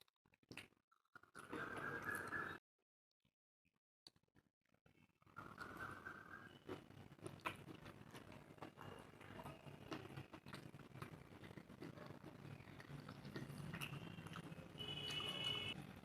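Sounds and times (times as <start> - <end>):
wet chewing with mouth clicks: 0.4 - 2.5, 6.6 - 15.3.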